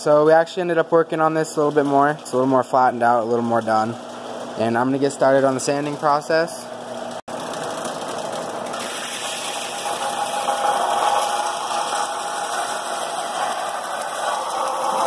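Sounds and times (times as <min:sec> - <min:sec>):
electric sander on steel: 0:08.8 - 0:15.0.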